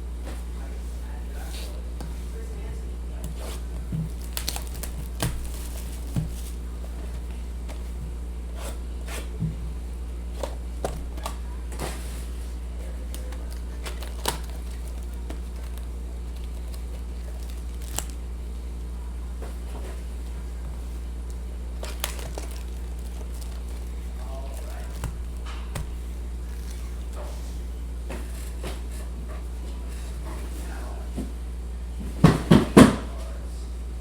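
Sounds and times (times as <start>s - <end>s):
card packs crinkling: 3.2s - 8.0s, 10.3s - 18.9s, 19.6s - 27.5s.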